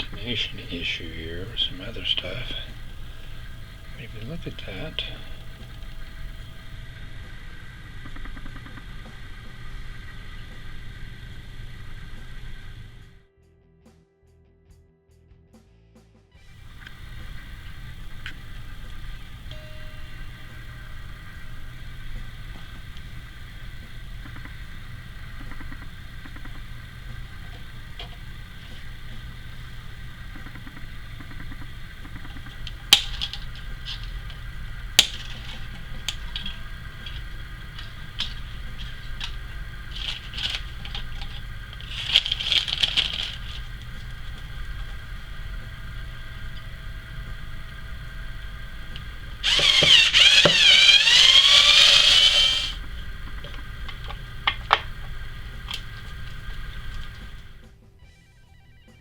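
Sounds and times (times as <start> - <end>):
loud whirring tool: 16.6 - 57.6
tool clicks and knocks: 32.0 - 34.4, 35.0 - 43.6, 49.4 - 52.8
scraping: 32.1 - 45.4, 48.9 - 53.0.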